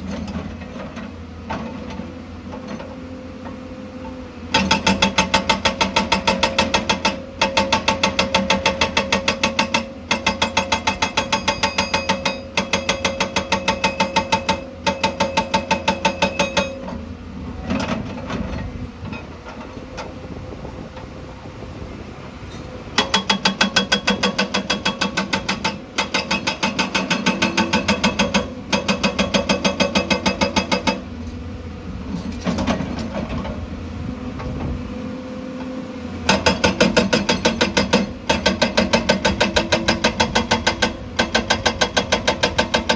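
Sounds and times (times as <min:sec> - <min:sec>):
hydraulic rock breaker hammering stone: 0:04.5 - 0:17.0, 0:23.0 - 0:31.2, 0:32.2 - 0:33.6, 0:36.2 - 0:42.9.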